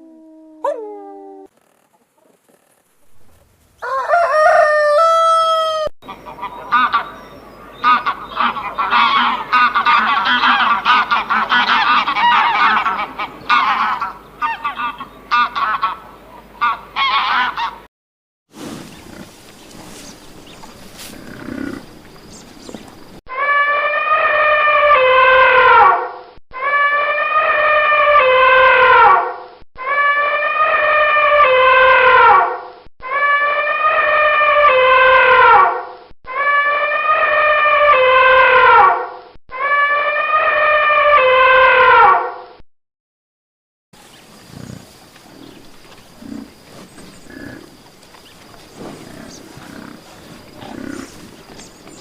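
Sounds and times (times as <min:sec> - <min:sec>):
geese honking: 0:03.8 - 0:07.2, 0:07.8 - 0:17.8.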